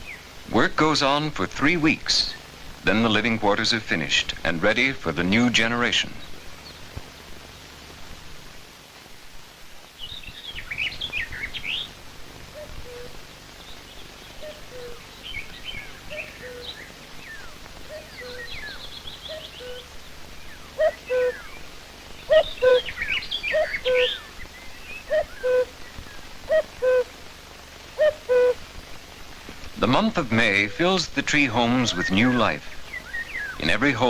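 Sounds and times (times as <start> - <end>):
small birds chirping and trilling: 0.0 - 7.4, 9.8 - 27.0, 29.8 - 34.0
low two-note bird call: 17.4 - 19.9, 22.3 - 24.2, 25.1 - 25.7.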